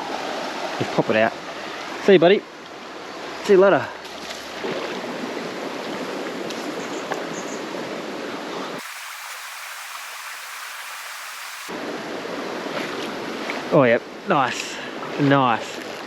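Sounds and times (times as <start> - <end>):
creek water running over rocks: 8.8 - 11.7.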